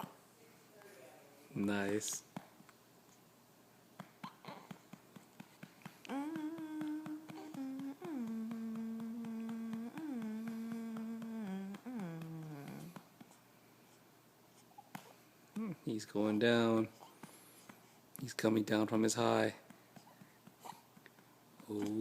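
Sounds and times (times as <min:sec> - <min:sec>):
light pats on baby's back: 0:01.7 - 0:02.8, 0:04.0 - 0:13.4, 0:17.1 - 0:22.0
person humming: 0:04.2 - 0:13.2, 0:15.5 - 0:15.9.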